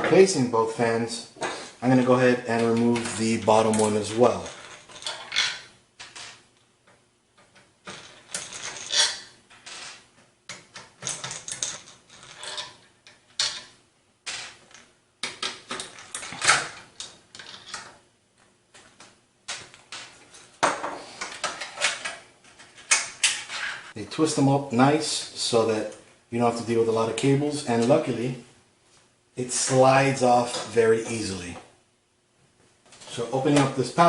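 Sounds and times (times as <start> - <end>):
plastic and metal parts rattling: 10.5 - 13.7.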